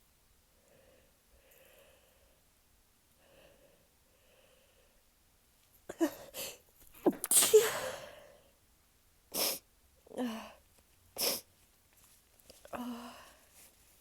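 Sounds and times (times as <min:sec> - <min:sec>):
woman sneezing: 0:07.0 - 0:08.2.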